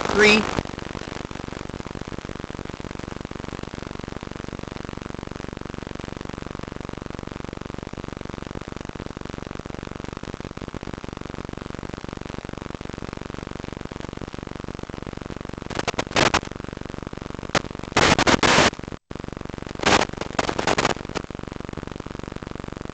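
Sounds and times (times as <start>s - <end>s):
buzzing hum over radio link: 0.0s - 1.2s, 15.4s - 22.9s.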